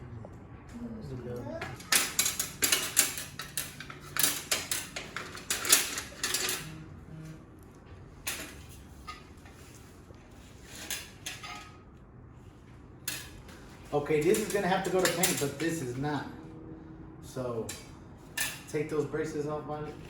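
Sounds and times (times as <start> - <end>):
hand tools clinking on metal: 1.8 - 6.8, 14.2 - 15.9.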